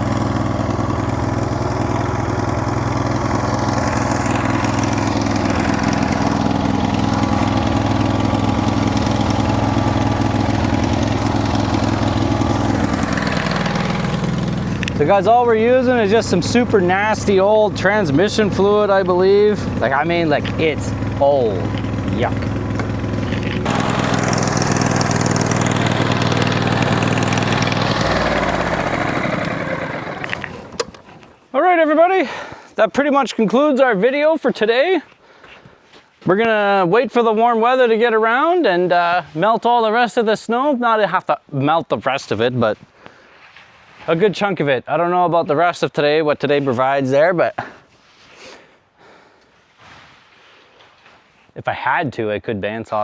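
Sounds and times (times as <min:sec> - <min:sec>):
sawmill engine running: 0:00.0 - 0:31.5.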